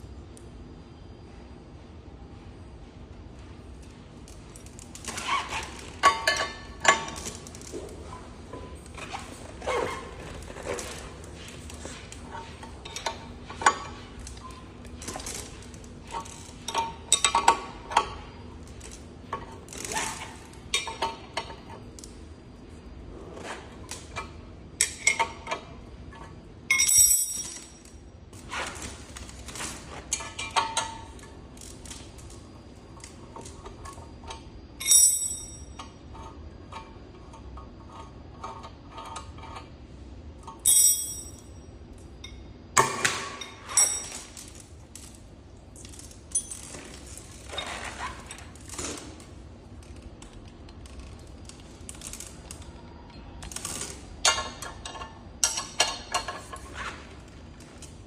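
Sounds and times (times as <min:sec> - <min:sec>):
ringing metal clanks: 0:26.7 - 0:27.8, 0:34.8 - 0:35.8, 0:40.6 - 0:41.6
metal tools clinking: 0:26.7 - 0:28.0, 0:34.8 - 0:35.8, 0:40.5 - 0:41.6, 0:43.3 - 0:44.6, 0:45.8 - 0:49.0.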